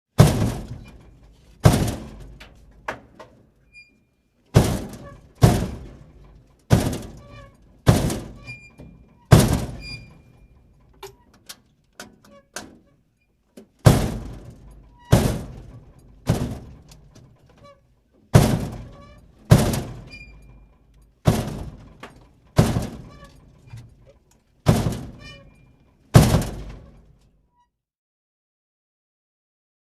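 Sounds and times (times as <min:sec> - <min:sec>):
dumpster door slamming: 0:00.2 - 0:03.3, 0:04.5 - 0:10.8, 0:13.8 - 0:17.4, 0:18.3 - 0:27.2
light knocks and rattles: 0:00.2 - 0:03.6, 0:04.5 - 0:12.9, 0:13.5 - 0:27.3.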